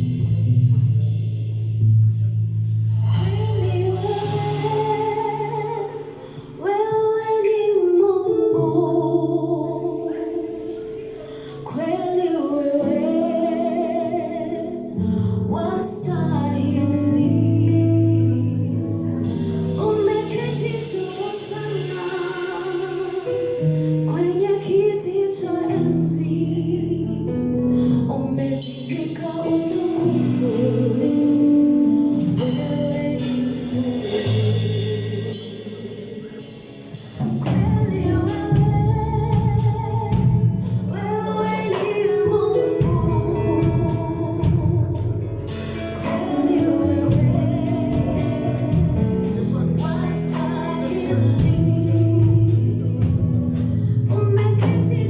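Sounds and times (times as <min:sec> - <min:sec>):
instrumental accompaniment: 0:00.0 - 0:55.0
voices singing worship song: 0:41.0 - 0:53.2.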